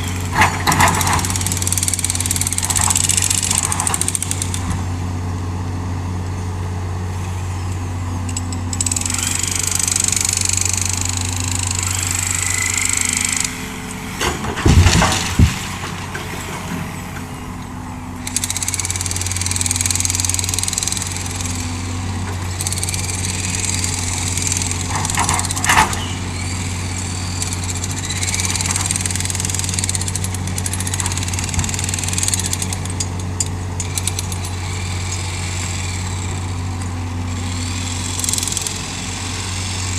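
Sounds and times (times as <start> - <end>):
excavator diesel engine running: 0.0 - 39.9
loud knocks: 14.2 - 16.1.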